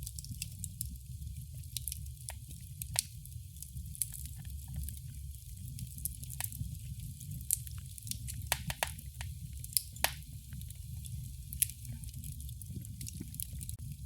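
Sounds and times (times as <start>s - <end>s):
low rumble of flames: 0.0s - 14.0s
wood fire crackling and popping: 0.0s - 14.0s.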